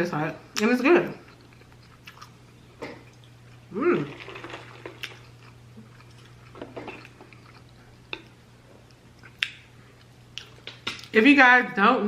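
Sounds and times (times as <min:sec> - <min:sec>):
person chewing food: 0:01.2 - 0:11.1
mouth clicks and smacks: 0:09.2 - 0:09.7.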